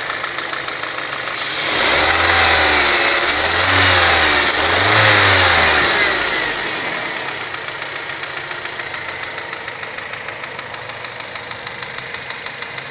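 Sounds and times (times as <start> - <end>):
car engine idling: 0.0 - 12.9
rapid engine ticking: 0.0 - 12.9.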